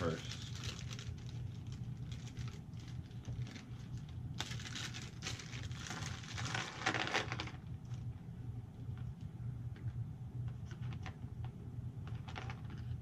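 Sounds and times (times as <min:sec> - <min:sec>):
plastic packaging crinkling: 0:00.0 - 0:08.1, 0:12.0 - 0:13.0
low steady hum: 0:00.0 - 0:13.0.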